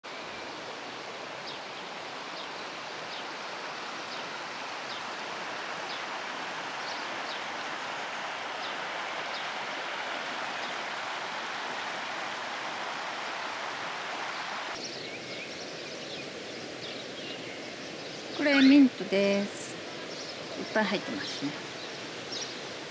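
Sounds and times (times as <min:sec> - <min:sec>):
river water rushing: 0:00.1 - 0:15.0
small birds chirping: 0:14.8 - 0:22.6.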